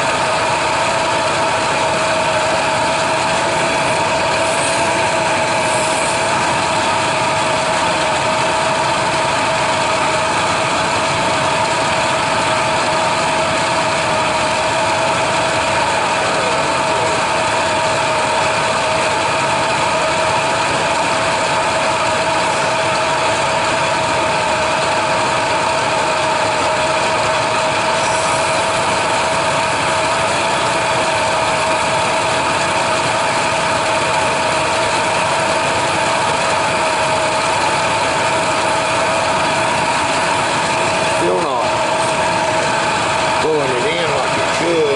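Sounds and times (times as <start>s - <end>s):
pickup engine idling: 0.0s - 44.9s.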